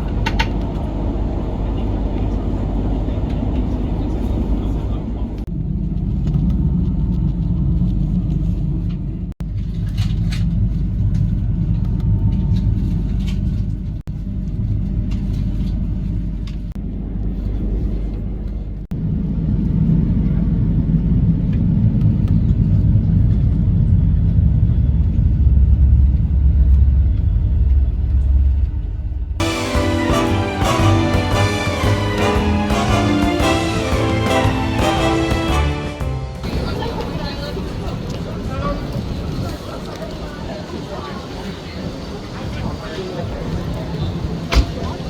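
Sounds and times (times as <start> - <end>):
train rumbling inside carriage: 0.0 - 45.0
music: 29.4 - 37.0.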